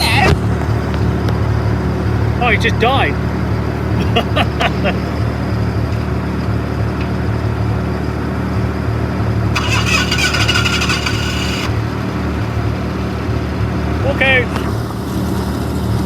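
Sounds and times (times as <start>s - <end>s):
tug engine running: 0.0s - 16.0s
starter motor whirring: 9.4s - 15.5s.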